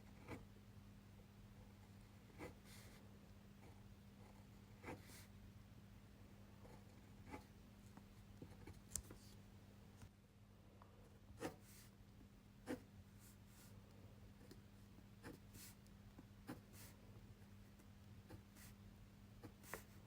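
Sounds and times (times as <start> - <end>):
pen scratching on paper: 2.2 - 3.0, 11.4 - 11.9, 12.6 - 13.7, 15.2 - 15.8, 16.4 - 17.0, 19.4 - 20.0.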